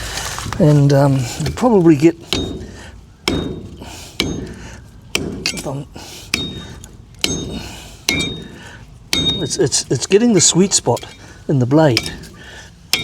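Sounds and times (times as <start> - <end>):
metallic ring of blade: 5.2 - 13.0.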